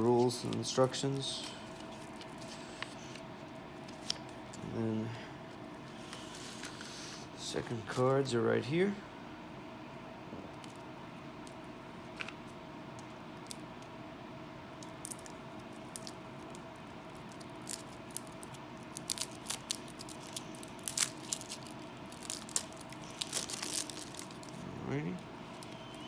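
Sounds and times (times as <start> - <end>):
low room hum: 0.0 - 26.0
card packs clicking and crinkling: 14.8 - 26.0.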